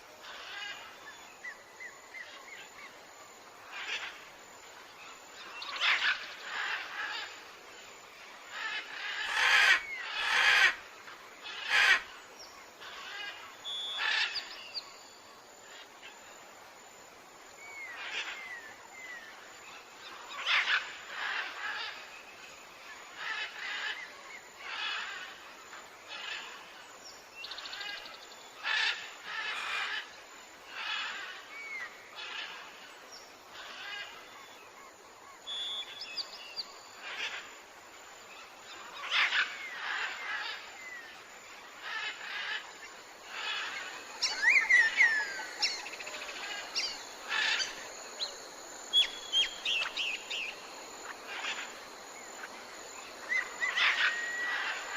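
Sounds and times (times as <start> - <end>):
steady background hiss: 0.0 - 54.9
birds calling: 41.8 - 54.9.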